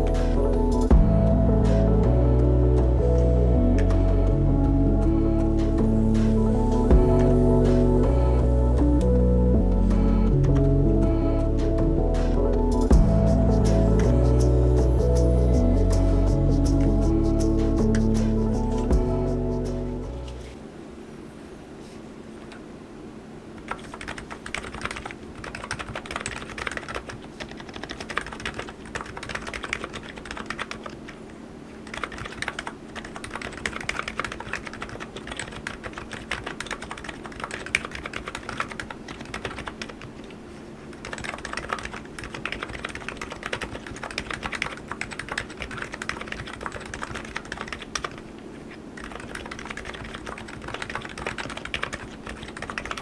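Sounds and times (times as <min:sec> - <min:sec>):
faint low hum: 0:00.0 - 0:53.0
keyboard typing: 0:23.6 - 0:48.4, 0:49.0 - 0:53.0.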